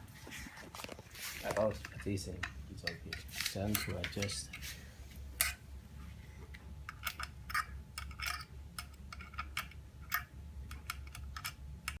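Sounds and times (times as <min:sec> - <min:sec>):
faint low hum: 0:00.0 - 0:12.0
clicks and taps of tools: 0:00.8 - 0:04.6.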